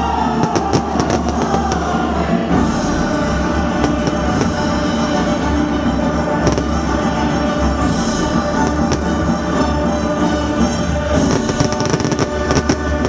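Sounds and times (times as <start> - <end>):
loud music playing: 0.0 - 13.0
firework cracks: 0.4 - 5.5, 6.1 - 13.0.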